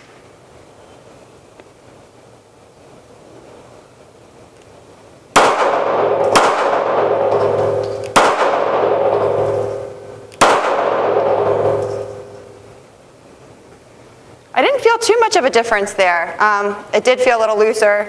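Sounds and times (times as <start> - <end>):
handgun shots ringing: 5.4 - 12.7.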